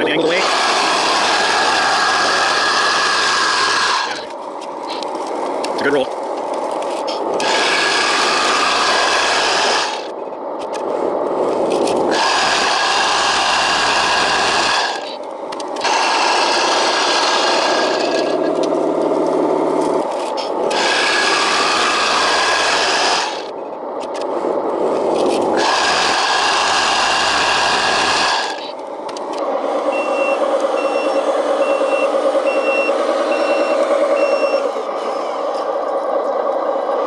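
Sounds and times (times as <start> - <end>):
steady motor hum: 0.0 - 37.0
toy motor and gear whine: 0.0 - 37.0
reversing beeper: 29.8 - 36.3.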